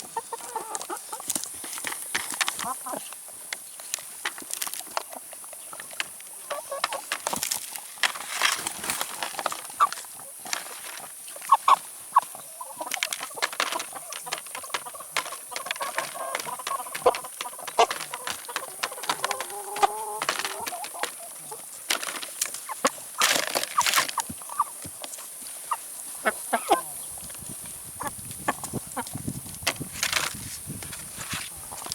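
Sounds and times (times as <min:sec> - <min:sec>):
chickens clucking: 0:00.0 - 0:31.9
beaks tapping: 0:00.5 - 0:24.8.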